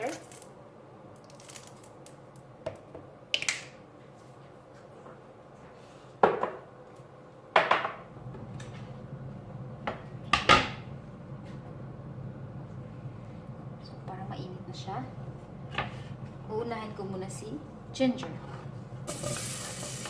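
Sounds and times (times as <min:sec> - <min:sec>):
low steady hum: 0:06.7 - 0:20.0.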